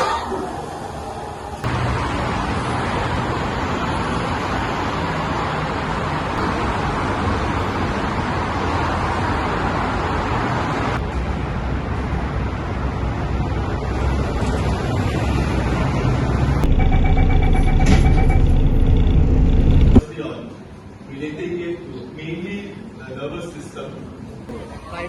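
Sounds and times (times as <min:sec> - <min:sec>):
road noise hiss: 0:00.0 - 0:16.6
vehicle rumble: 0:01.6 - 0:20.1.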